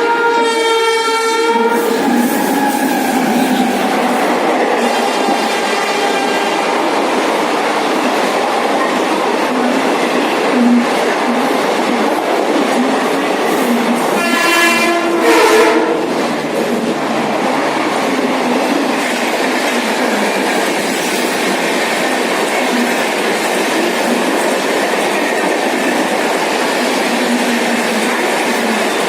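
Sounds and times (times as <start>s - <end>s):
locomotive air horn: 0.0s - 3.7s, 14.1s - 16.2s
train rolling past: 0.0s - 29.0s.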